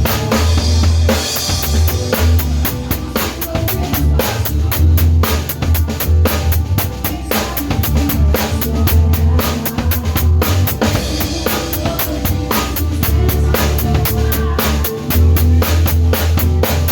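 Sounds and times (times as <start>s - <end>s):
drum kit playing a beat: 0.0s - 16.9s
pop band backing with bass: 0.0s - 16.9s.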